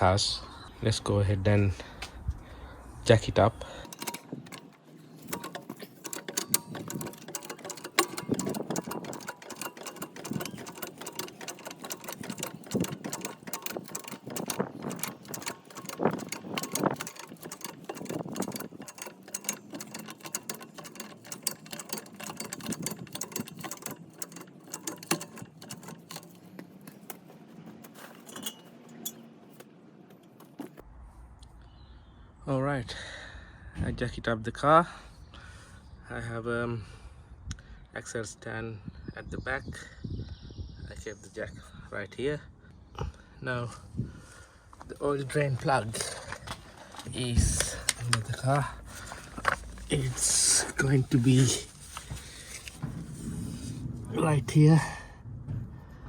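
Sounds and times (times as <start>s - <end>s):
car jack clicking and clanking: 3.6s - 30.8s, 46.0s - 53.8s.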